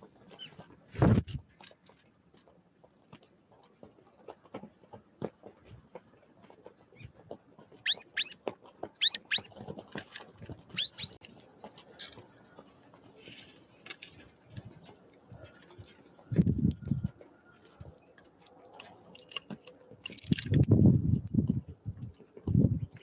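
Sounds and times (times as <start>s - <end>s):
small birds chirping: 6.7s - 11.2s, 12.3s - 19.1s.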